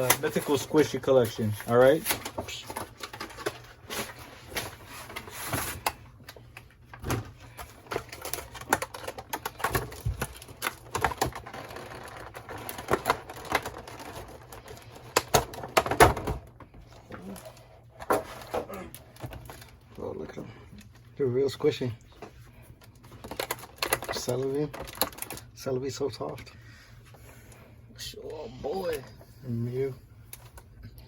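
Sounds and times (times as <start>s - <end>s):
packaging being opened by hand: 0.0s - 16.2s, 22.8s - 25.6s.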